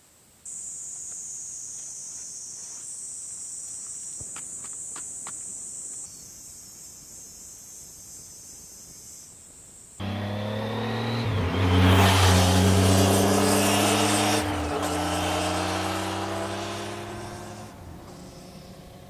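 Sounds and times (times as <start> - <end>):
insects trilling: 0.5 - 10.0, 15.7 - 19.0.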